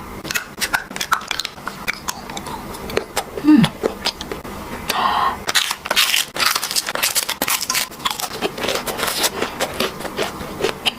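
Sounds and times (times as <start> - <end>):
crisp food crunching: 5.4 - 10.9.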